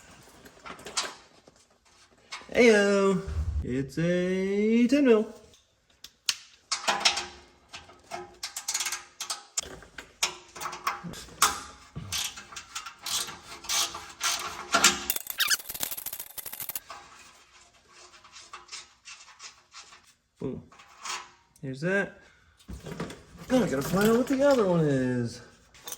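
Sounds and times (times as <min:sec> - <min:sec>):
ratchet wrench clicking: 0:15.1 - 0:16.8.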